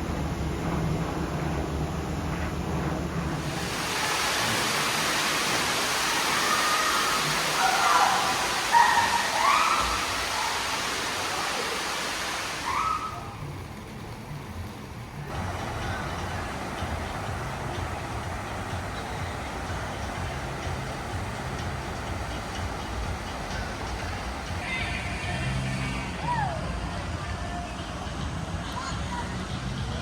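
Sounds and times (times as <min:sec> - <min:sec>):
rushing water: 0:03.3 - 0:28.3
people shouting and calling: 0:06.0 - 0:11.9, 0:12.5 - 0:13.6, 0:24.5 - 0:30.0.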